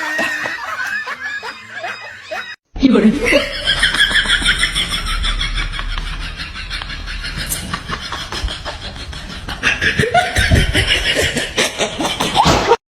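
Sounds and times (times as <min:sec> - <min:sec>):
person snickering: 0:03.2 - 0:12.4.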